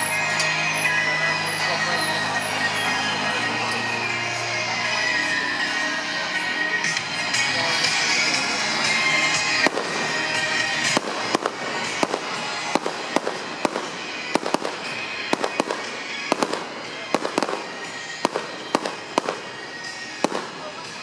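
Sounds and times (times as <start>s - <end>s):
fireworks crackling: 0.0s - 21.0s
fireworks bangs and pops: 9.5s - 21.0s.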